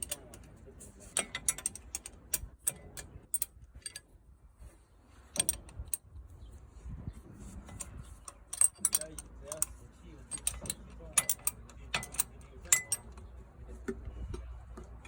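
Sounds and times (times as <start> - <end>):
metal tools clicking and clinking: 0.0 - 4.2, 5.4 - 6.0, 7.6 - 13.3.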